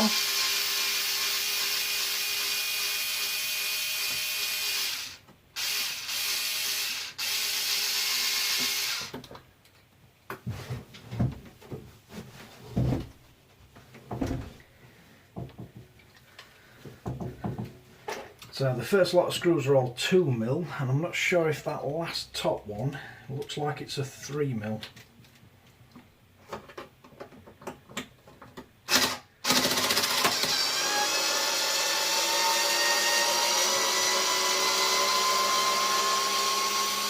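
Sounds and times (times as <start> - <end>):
electric screwdriver running: 0.0 - 9.1, 28.9 - 37.0.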